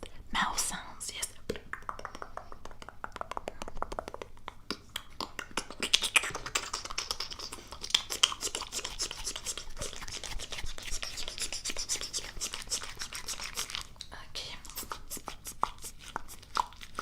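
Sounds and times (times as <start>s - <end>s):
tongue and lip clicks: 1.4s - 17.0s.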